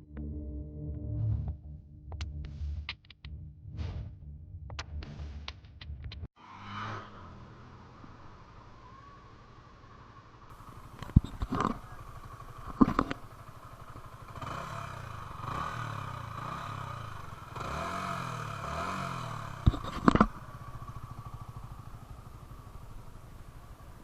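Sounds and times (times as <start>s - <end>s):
motorcycle engine idling and revving: 5.9s - 24.0s.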